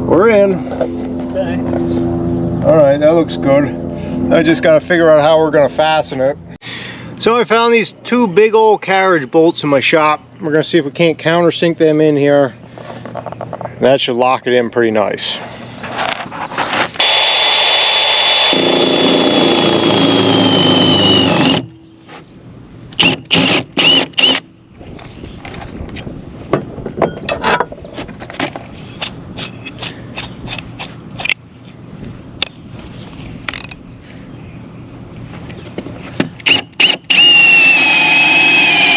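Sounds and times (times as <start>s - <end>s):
electric drill boring into wood: 17.0s - 21.7s, 23.0s - 24.4s, 36.4s - 38.9s.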